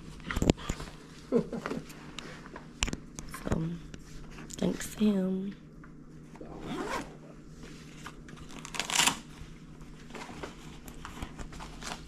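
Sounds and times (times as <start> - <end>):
rustling and handling noises: 6.1 - 12.0.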